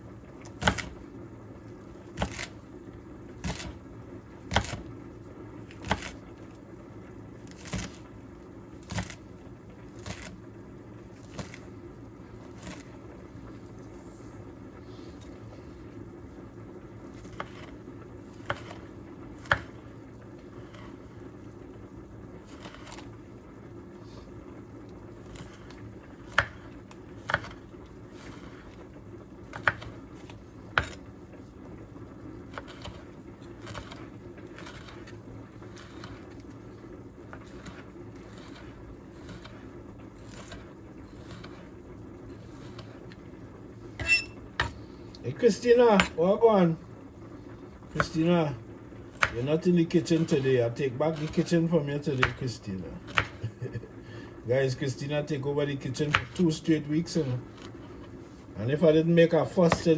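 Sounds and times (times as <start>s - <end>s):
steady low hum: 0.0s - 59.9s
knife chopping on cutting board: 0.6s - 1.0s, 2.2s - 2.5s, 3.4s - 3.8s, 4.5s - 4.8s, 5.8s - 6.2s, 7.5s - 8.0s, 18.4s - 18.8s, 19.4s - 19.8s, 26.3s - 27.6s, 29.5s - 30.0s, 30.8s - 31.0s, 32.5s - 33.0s, 33.6s - 34.0s, 34.6s - 35.1s, 49.2s - 49.4s, 52.2s - 52.4s, 53.1s - 53.4s, 56.1s - 56.4s.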